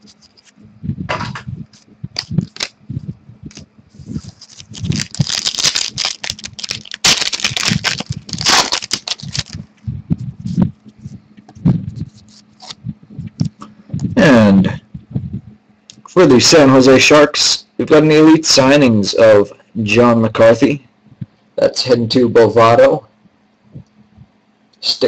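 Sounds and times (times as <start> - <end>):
wrapper crinkling and tearing: 2.2 - 2.8, 3.5 - 9.7.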